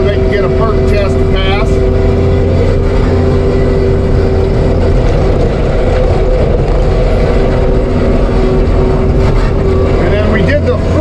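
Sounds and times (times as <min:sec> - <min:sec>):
diesel engine rumble: 0:00.0 - 0:11.0.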